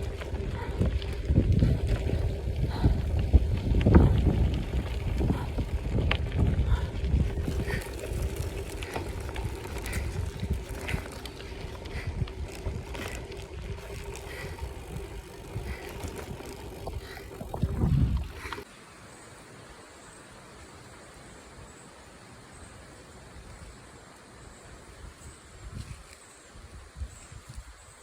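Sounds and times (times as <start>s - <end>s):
wind buffeting microphone: 0.0s - 18.6s
bicycle rolling on path: 0.0s - 18.7s, 22.9s - 28.0s.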